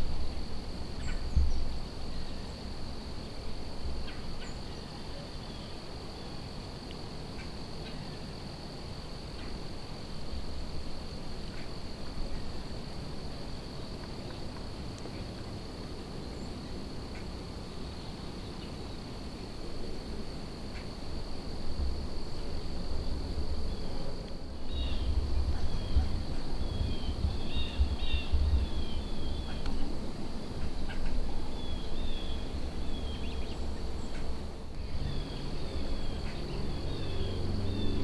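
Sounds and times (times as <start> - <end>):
wind rumbling on microphone: 0.0 - 4.1, 21.1 - 38.0
crickets droning: 0.0 - 38.0.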